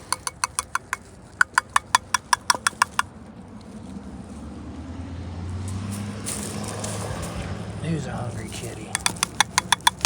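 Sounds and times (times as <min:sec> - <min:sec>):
rapid mouth clicks: 0:00.0 - 0:03.0, 0:09.0 - 0:10.0.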